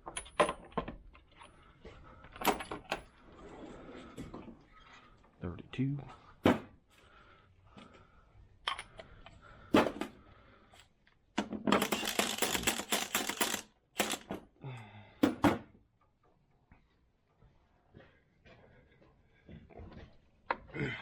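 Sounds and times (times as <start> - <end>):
hand ratchet clicking: 11.8 - 14.3.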